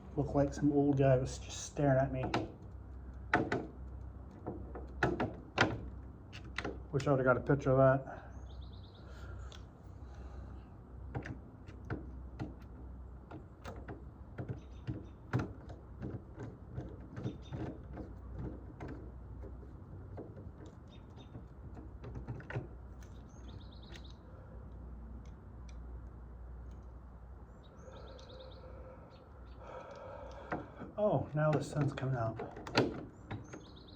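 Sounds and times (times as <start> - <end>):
clicks and knocks on door lock: 2.2 - 2.6, 3.3 - 6.9, 11.1 - 12.7, 13.3 - 22.8, 30.4 - 33.8
bird chirping trill: 8.3 - 9.1, 23.1 - 24.3, 27.5 - 29.7, 33.1 - 33.9.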